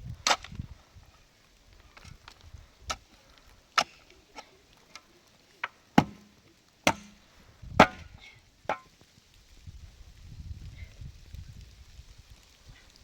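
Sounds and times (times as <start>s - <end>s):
sharp blows on wood: 6.0s - 6.3s, 6.9s - 7.2s, 7.8s - 8.9s.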